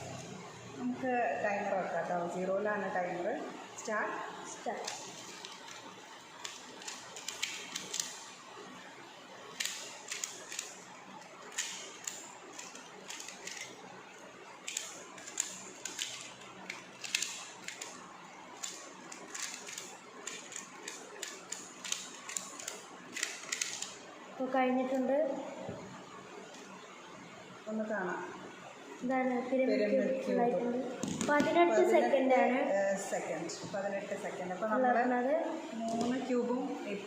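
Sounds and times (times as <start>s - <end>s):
puzzle cube plastic clicks: 6.4s - 8.2s, 9.5s - 10.8s, 11.4s - 13.8s, 14.6s - 18.0s, 18.6s - 24.0s.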